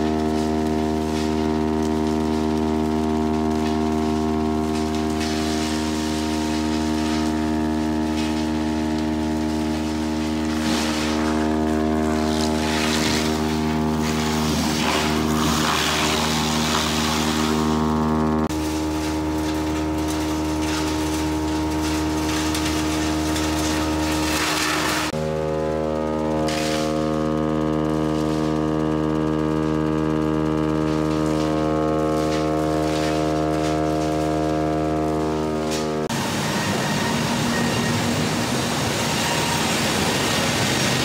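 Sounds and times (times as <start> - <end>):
sawmill machinery drone: 0.0 - 41.0.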